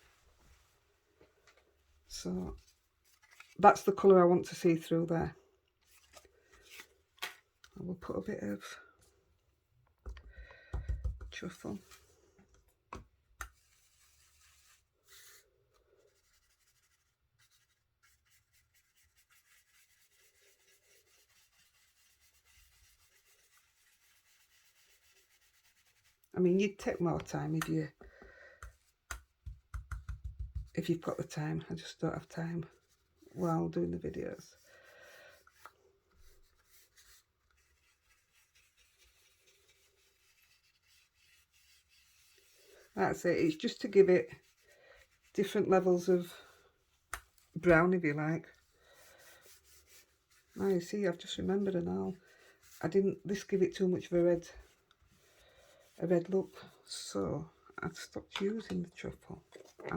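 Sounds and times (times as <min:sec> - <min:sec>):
faint rubbing of ink on card: 0:02.6 - 0:03.6, 0:13.4 - 0:26.3, 0:34.4 - 0:43.0, 0:43.8 - 0:45.6, 0:48.5 - 0:56.8
light taps: 0:28.6 - 0:30.8.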